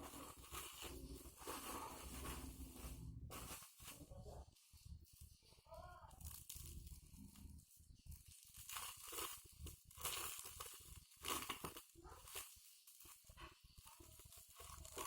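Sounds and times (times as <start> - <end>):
packaging crinkling and tearing: 0.0 - 4.2, 6.1 - 7.5, 8.1 - 15.0.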